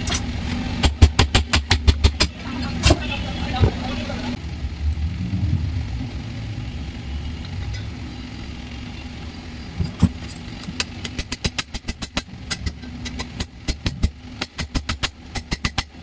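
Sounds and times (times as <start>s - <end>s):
hand tools tapping metal: 0.0s - 3.0s
low engine-like hum: 0.0s - 16.0s.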